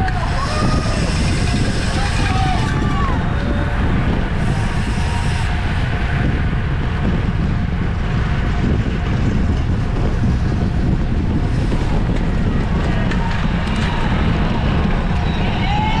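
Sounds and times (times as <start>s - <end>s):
road and bike noise: 0.0s - 16.0s
wind buffeting microphone: 0.0s - 16.0s.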